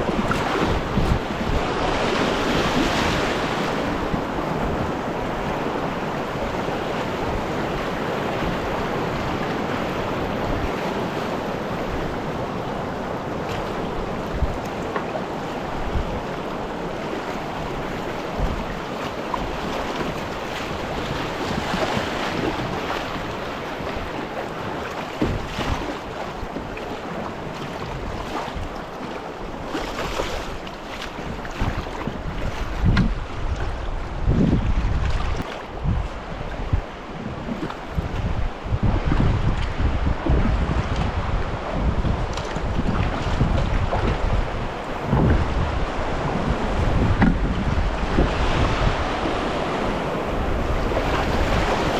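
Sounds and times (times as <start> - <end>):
wind buffeting microphone: 0.0 - 51.9
river water rushing: 35.3 - 51.9.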